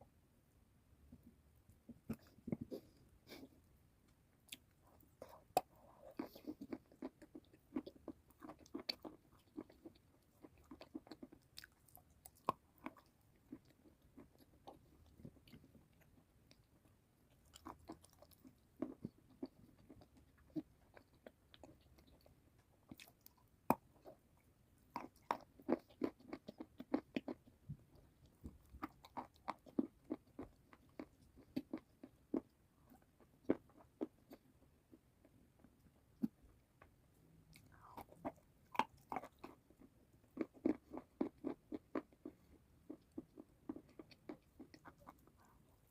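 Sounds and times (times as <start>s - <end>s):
chewing crunchy food: 1.1s - 45.9s.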